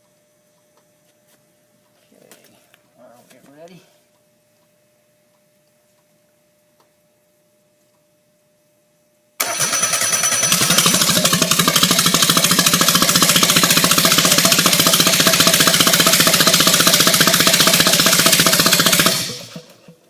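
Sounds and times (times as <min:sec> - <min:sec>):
car engine cranking and running: 0:09.4 - 0:20.0.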